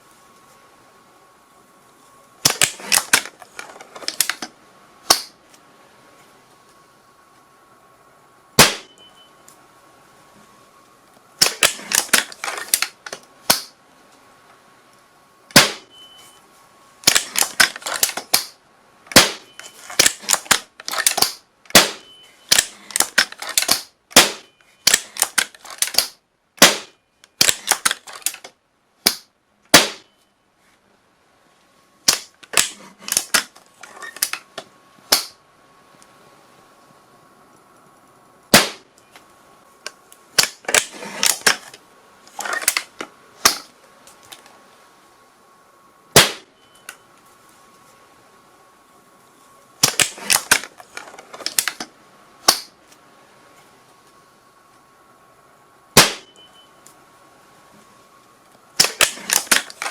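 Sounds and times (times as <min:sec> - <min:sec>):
gunshots: 0:08.6 - 0:09.0, 0:15.5 - 0:15.9, 0:18.3 - 0:25.4, 0:26.0 - 0:27.9, 0:29.1 - 0:30.1, 0:38.5 - 0:38.9, 0:46.2 - 0:46.5, 0:56.0 - 0:56.3.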